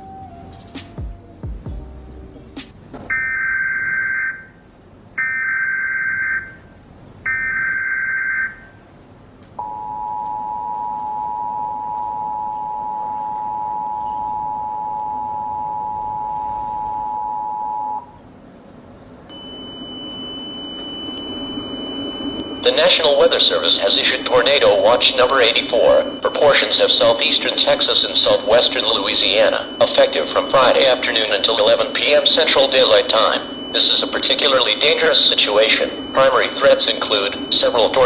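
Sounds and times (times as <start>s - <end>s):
faint high tone drone: 0.0s - 0.7s, 9.6s - 38.0s
two-tone alert beep: 19.3s - 38.0s
raspy digital data bursts: 21.3s - 38.0s.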